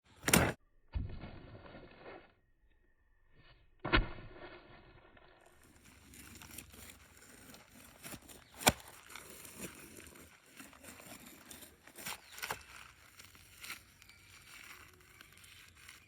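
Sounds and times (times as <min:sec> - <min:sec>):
knife cutting into fruit: 0:05.6 - 0:16.0
tearing crunches: 0:05.6 - 0:16.0.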